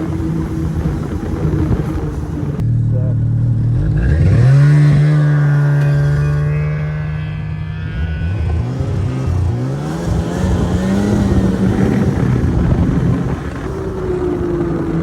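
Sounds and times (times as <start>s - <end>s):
snowmobile engine revving: 0.0s - 15.0s.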